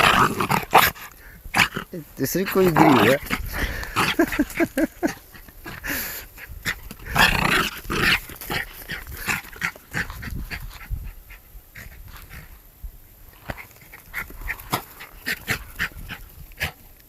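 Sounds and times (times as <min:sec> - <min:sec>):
dog growling: 0:00.0 - 0:11.0.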